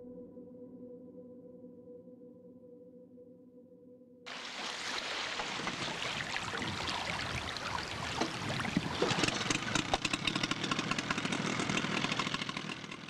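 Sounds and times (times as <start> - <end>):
vehicle engine running: 5.3 - 13.0.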